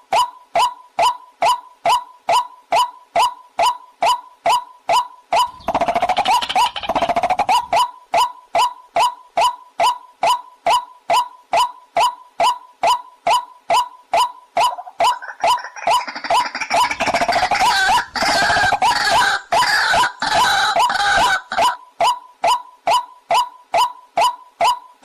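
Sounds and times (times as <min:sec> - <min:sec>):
waterhen calling: 0:14.6 - 0:21.8.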